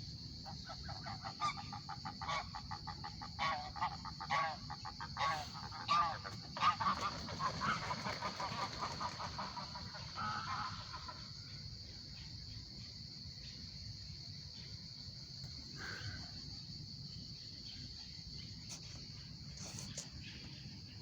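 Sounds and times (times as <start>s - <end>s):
high-pitched insect chorus: 0.0s - 21.0s
geese honking: 1.0s - 11.3s.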